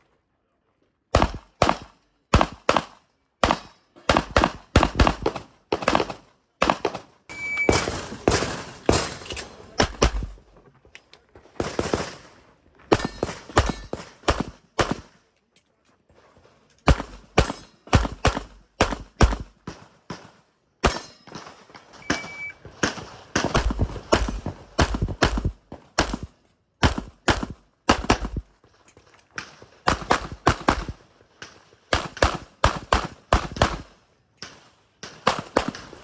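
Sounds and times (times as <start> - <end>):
shot timer beep: 7.3 - 7.8, 22.0 - 22.6.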